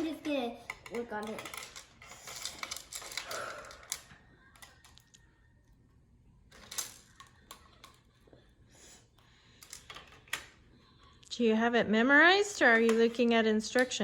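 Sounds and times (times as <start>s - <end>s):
plastic bricks clicking and rattling: 0.7s - 5.1s.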